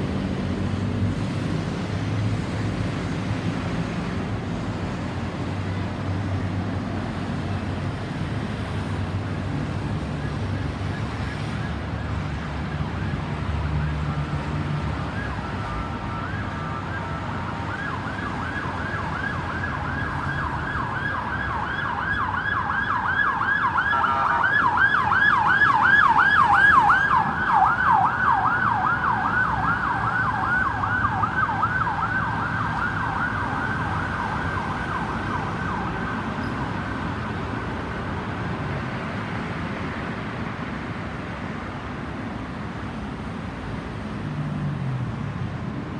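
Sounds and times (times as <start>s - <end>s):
road traffic noise: 0.0s - 45.9s
ambulance siren yelping: 10.1s - 37.7s.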